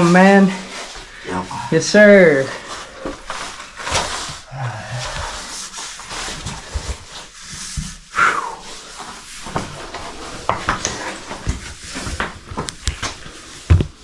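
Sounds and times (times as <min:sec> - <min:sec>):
scraping against rock: 0:02.4 - 0:07.8
person panting: 0:04.4 - 0:07.2.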